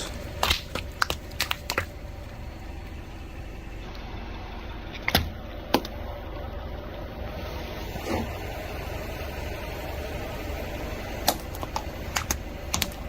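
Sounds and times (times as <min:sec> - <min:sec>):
water balloons snapping: 0:00.0 - 0:02.4, 0:11.2 - 0:13.0
car engine rumble: 0:00.0 - 0:13.0.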